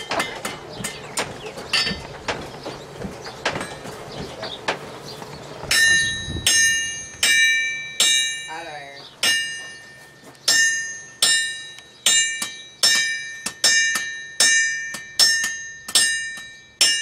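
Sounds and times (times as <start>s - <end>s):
hammer on anvil: 5.7s - 9.9s, 10.5s - 17.0s.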